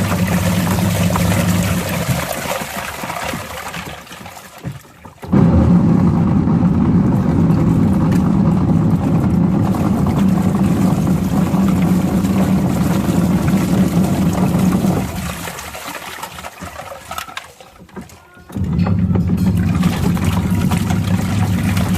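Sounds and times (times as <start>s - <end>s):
washing machine running: 0.0s - 21.9s.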